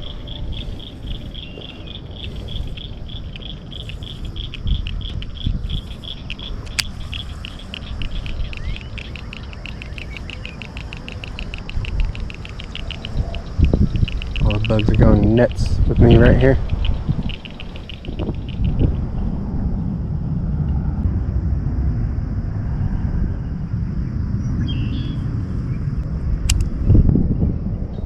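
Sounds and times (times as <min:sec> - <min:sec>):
insects chirping: 0:00.0 - 0:28.0
low rumble on microphone: 0:00.0 - 0:28.0
sharp click: 0:06.1 - 0:15.0, 0:26.5 - 0:26.8.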